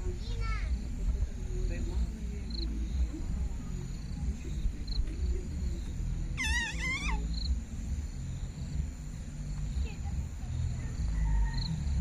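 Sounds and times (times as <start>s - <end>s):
small birds chirping: 0.0s - 12.0s
bird wavering call: 6.4s - 7.3s.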